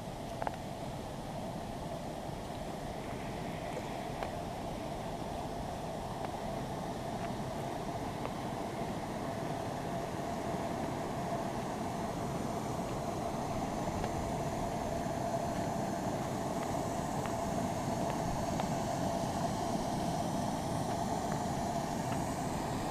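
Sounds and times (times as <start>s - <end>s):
vehicle engine running: 9.8s - 22.9s.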